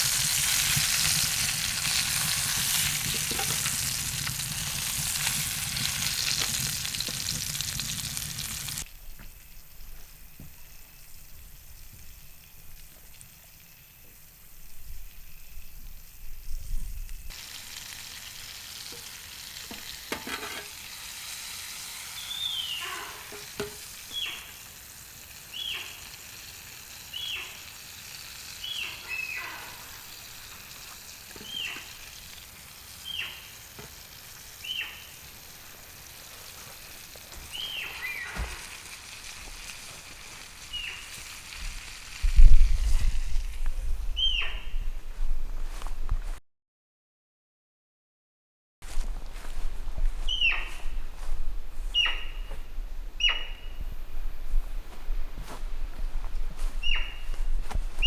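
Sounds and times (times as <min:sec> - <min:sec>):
fish sizzling in a pan: 0:00.0 - 0:08.9, 0:17.2 - 0:44.6.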